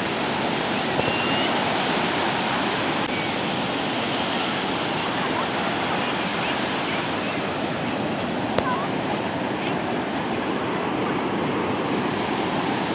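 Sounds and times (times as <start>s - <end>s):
ocean waves breaking on shore: 0.0s - 12.9s.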